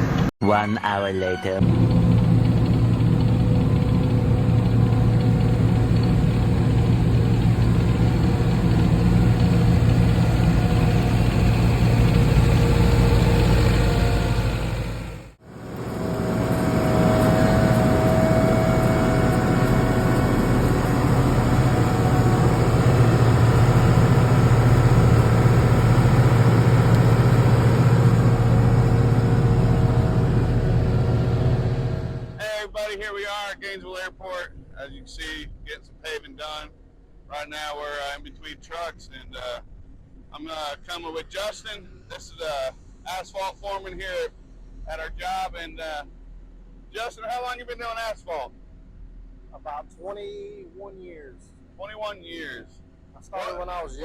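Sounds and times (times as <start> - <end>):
heavy machinery engines humming: 1.6 - 32.4.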